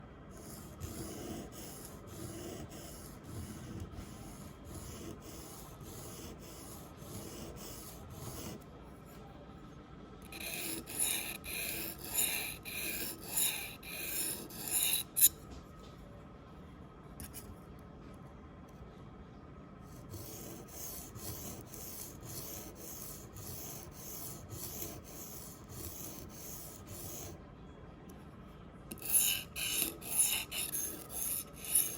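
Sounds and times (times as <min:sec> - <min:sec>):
metal tool scraping sharpening stone: 0:10.3 - 0:15.4, 0:28.9 - 0:31.9.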